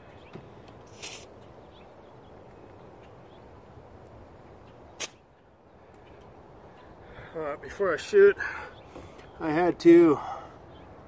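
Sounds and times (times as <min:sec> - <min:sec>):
faint steady background noise: 0:00.0 - 0:11.0
compressed air hissing: 0:00.8 - 0:01.3.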